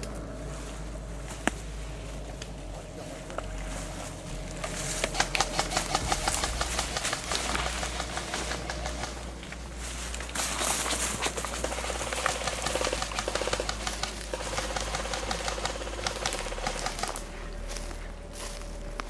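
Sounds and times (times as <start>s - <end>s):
airsoft guns firing bursts: 5.0s - 9.3s, 11.2s - 17.2s.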